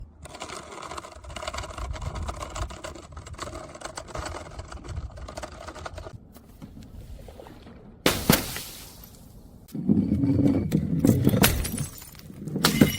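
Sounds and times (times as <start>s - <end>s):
glass bottle breaking: 8.1s - 9.3s, 11.4s - 12.9s.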